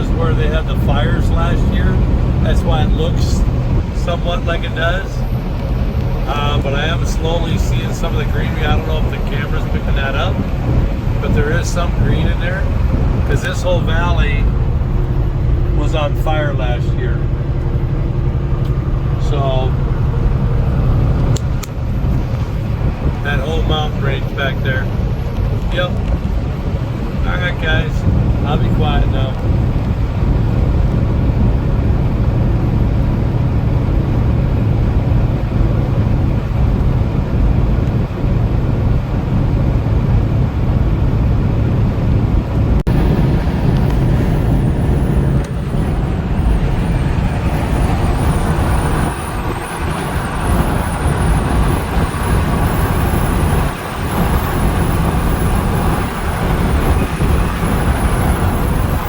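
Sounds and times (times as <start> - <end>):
vehicle engine drone: 0.0 - 59.0
tyre and wind hiss: 42.8 - 59.0.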